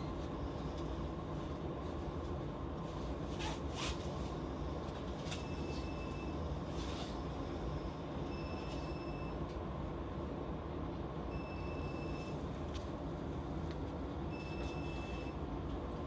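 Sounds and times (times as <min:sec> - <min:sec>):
electric train humming: 0:00.0 - 0:16.0
high beep: 0:11.3 - 0:12.4.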